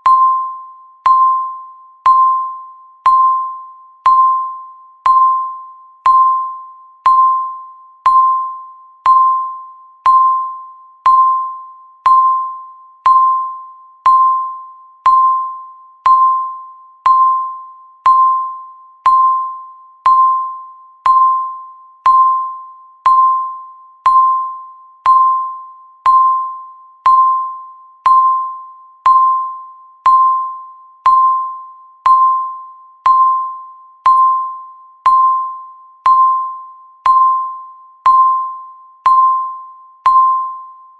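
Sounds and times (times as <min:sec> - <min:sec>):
timer ticks with ringing tone: 0:00.0 - 0:40.9.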